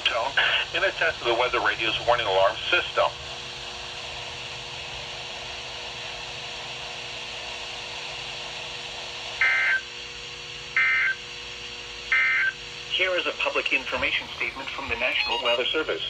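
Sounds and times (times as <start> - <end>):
radio hiss: 0.0 - 3.2, 12.8 - 16.0
two-tone digital data bursts: 14.9 - 15.7.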